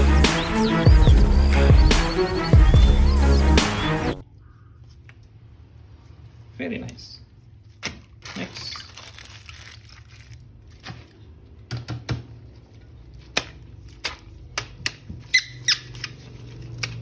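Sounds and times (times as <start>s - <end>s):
plastic packaging clicks and taps: 13.2s - 15.3s
plastic rubbing squeak: 15.2s - 16.8s.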